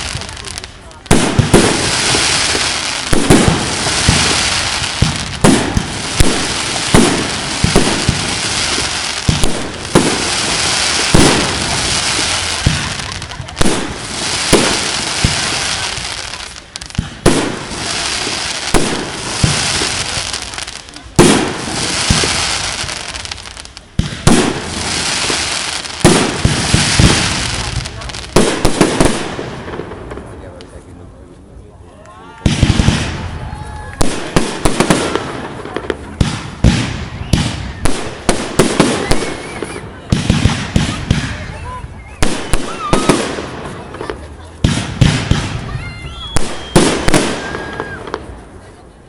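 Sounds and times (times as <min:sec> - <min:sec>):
fireworks crackling hiss: 0:00.0 - 0:31.8, 0:32.4 - 0:49.0
firework shells booming: 0:01.1 - 0:23.2, 0:23.9 - 0:30.3, 0:42.2 - 0:45.7.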